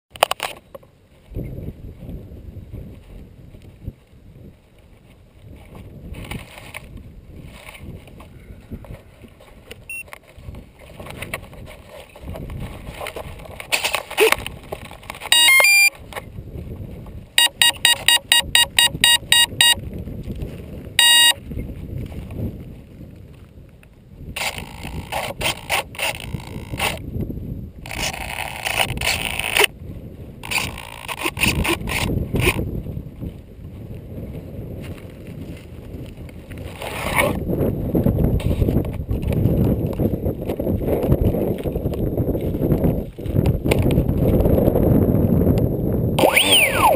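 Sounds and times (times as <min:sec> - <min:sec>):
wind buffeting microphone: 0:01.0 - 0:15.3, 0:15.9 - 0:46.9
short electronic beeps: 0:15.3 - 0:15.9, 0:17.4 - 0:19.8, 0:21.0 - 0:21.4, 0:46.2 - 0:46.9.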